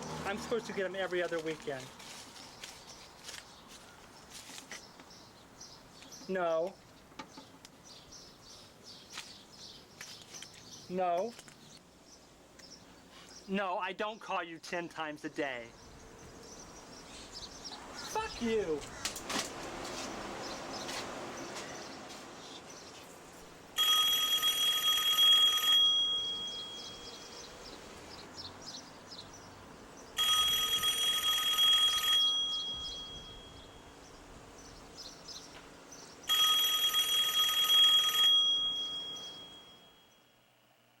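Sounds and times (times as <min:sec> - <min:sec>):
payphone bell ringing: 0:23.8 - 0:27.3, 0:30.2 - 0:33.9, 0:36.3 - 0:40.3.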